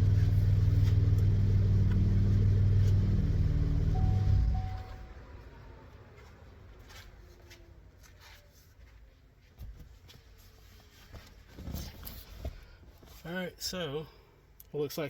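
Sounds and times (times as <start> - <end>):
soft rustles of handling: 6.0 - 14.0.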